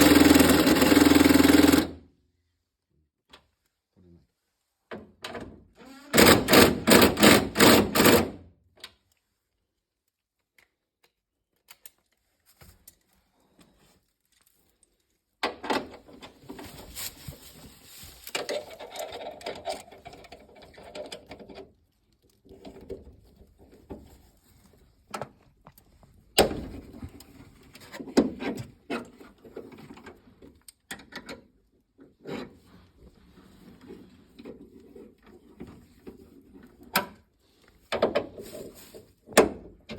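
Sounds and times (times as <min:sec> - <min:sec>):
impact driver hammering: 0:06.2 - 0:08.4.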